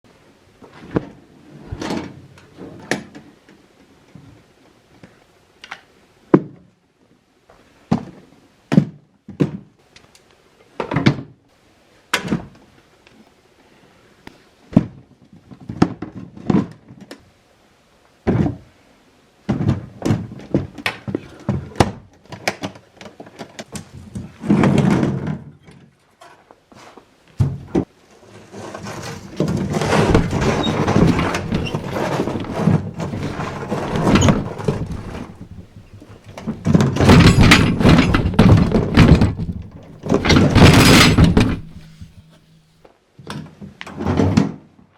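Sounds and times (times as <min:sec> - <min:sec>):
hard objects dropped into bin: 0:29.4 - 0:42.4.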